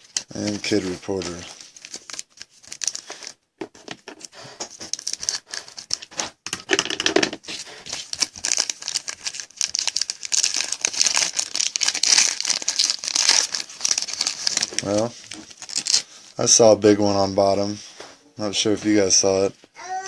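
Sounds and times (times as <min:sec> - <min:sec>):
foil wrapper crinkling and tearing: 0:00.0 - 0:03.4, 0:04.8 - 0:06.2, 0:07.5 - 0:16.4.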